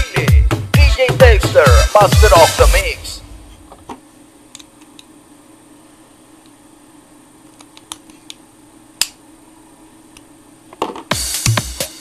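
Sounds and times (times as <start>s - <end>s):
low hum: 2.5s - 4.0s.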